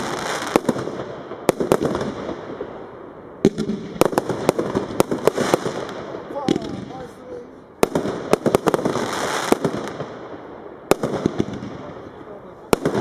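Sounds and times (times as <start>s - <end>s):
fireworks hiss: 0.0s - 1.2s, 4.1s - 12.0s
fireworks bangs: 0.0s - 13.0s.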